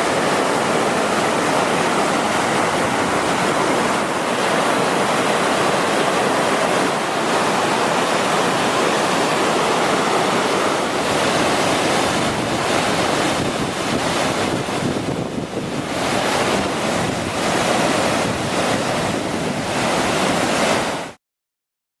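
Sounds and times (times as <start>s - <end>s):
flooded river rushing: 0.0s - 21.2s
wind buffeting microphone: 8.3s - 21.0s.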